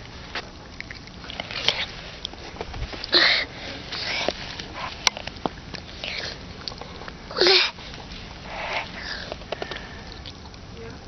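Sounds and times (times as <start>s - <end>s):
pet snuffling breaths: 3.1s - 10.1s.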